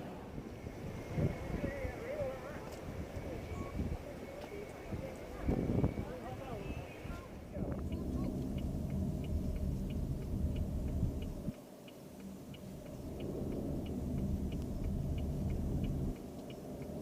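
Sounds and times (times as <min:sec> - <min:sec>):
road and engine rumble: 0:00.0 - 0:17.0
turn signal clicking: 0:07.6 - 0:17.0.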